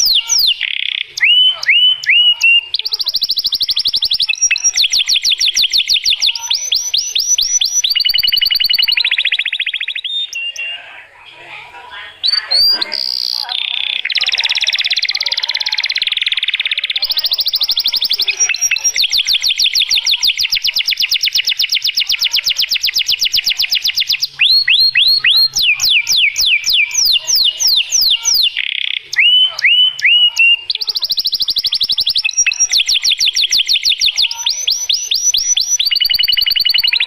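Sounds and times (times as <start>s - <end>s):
canary singing trills and whistles: 0.0s - 11.2s, 12.0s - 37.0s.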